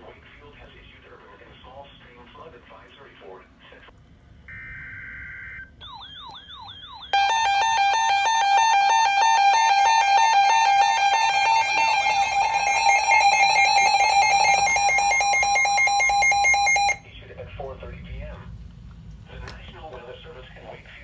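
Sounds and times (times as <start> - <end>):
harsh two-tone alert: 5.4 - 17.1.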